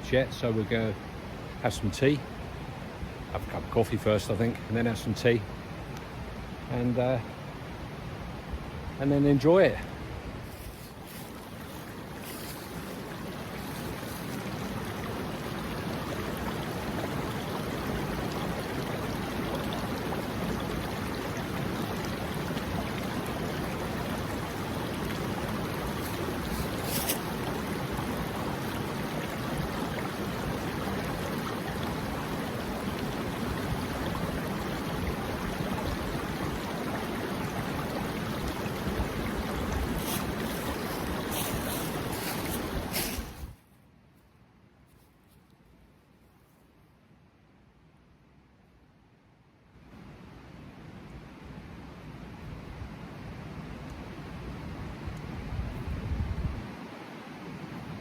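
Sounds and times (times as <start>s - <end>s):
brook rushing over rocks: 10.4s - 43.6s.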